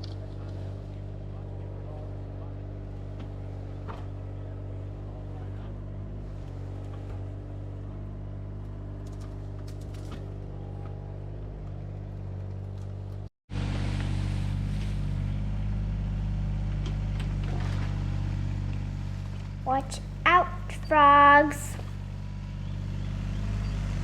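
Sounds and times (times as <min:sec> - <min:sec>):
excavator engine running: 0:19.7 - 0:22.2.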